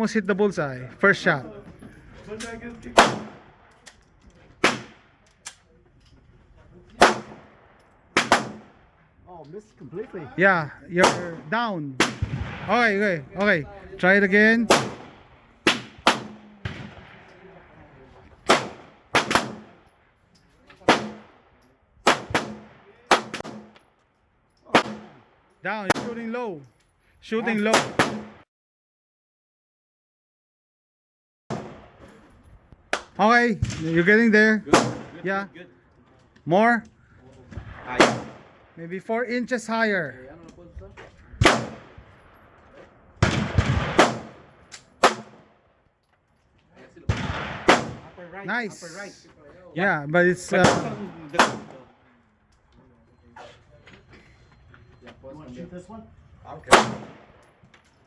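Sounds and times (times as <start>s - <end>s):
pistol shots: 2.4s - 5.7s, 6.9s - 9.0s, 10.9s - 20.0s, 20.8s - 23.8s, 24.7s - 26.3s, 27.6s - 28.4s, 31.5s - 32.2s, 32.9s - 35.4s, 37.5s - 38.8s, 41.0s - 45.7s, 47.0s - 48.4s, 50.5s - 52.0s, 56.5s - 57.8s
fainter gunshot: 8.2s - 8.7s, 12.0s - 12.9s, 14.7s - 17.3s, 41.4s - 42.0s, 43.2s - 45.5s, 47.1s - 48.2s, 50.6s - 51.8s.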